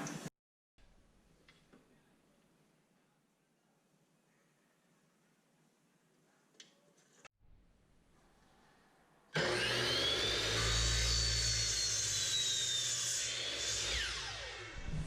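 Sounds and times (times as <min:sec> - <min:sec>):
chop saw cutting wood: 0:09.4 - 0:14.8.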